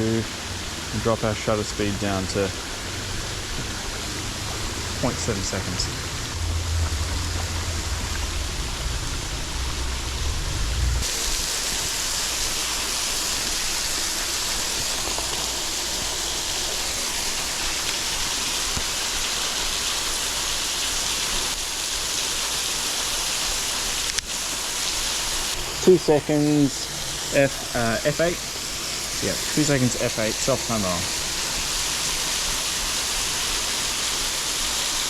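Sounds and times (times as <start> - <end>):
waterfall rushing: 0.0 - 35.0
low rumble: 3.5 - 11.3.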